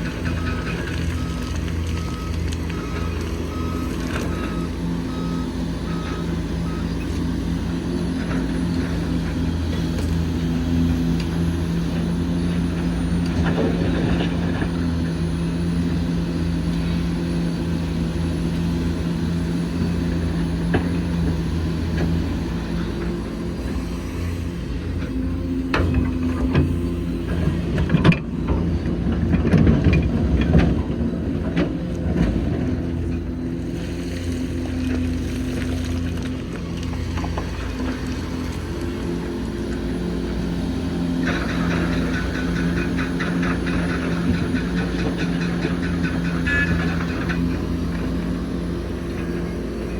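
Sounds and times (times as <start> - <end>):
heavy diesel engines running: 0.0 - 49.9
clatter: 41.2 - 48.0.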